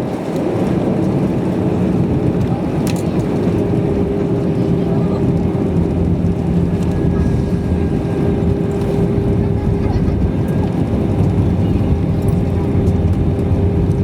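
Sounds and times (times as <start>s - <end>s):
low rumble of engines: 0.0s - 14.0s
steady hum: 3.4s - 14.0s.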